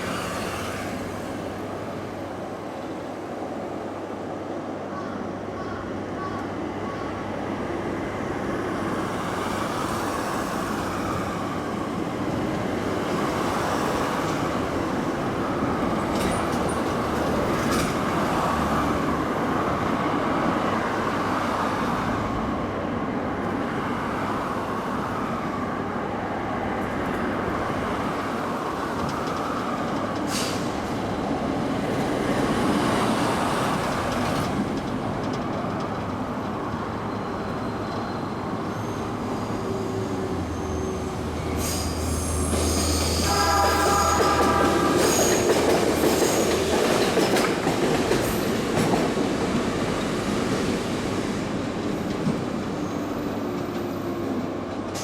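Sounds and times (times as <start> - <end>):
train wheels rolling on rails: 8.2 - 22.1, 26.8 - 55.0
rail joint clicks: 12.2 - 19.1, 28.0 - 38.3, 40.9 - 55.0.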